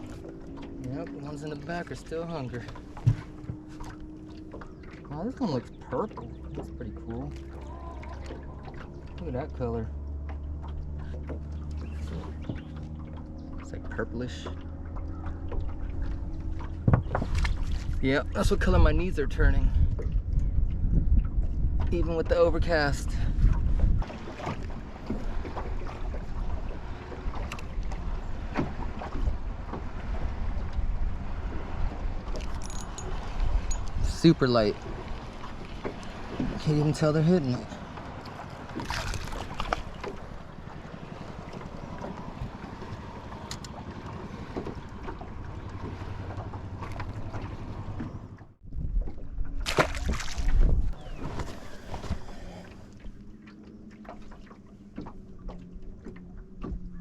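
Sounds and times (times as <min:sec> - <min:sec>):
boat and water noise: 0:00.0 - 0:57.0
light knocks and clicks: 0:02.6 - 0:05.1, 0:10.1 - 0:13.7
wind buffeting microphone: 0:15.1 - 0:53.3.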